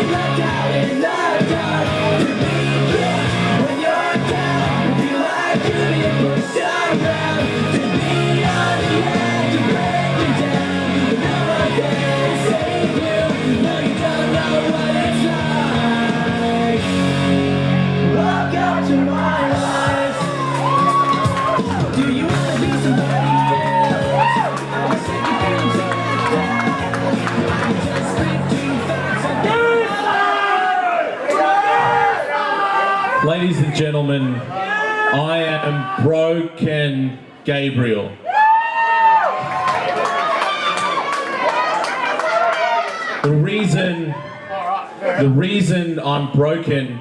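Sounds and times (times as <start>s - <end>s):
rock song with singing: 0.0s - 30.1s.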